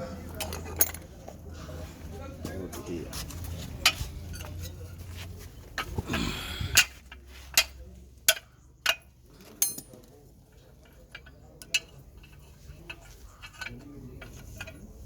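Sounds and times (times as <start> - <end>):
metal knocks and clinks: 0.4 - 1.1, 8.3 - 10.2.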